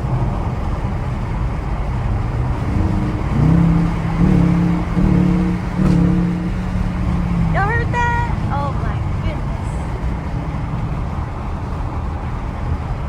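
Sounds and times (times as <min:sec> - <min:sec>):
car engine revving: 0:00.0 - 0:13.0
road rumble: 0:00.0 - 0:13.0.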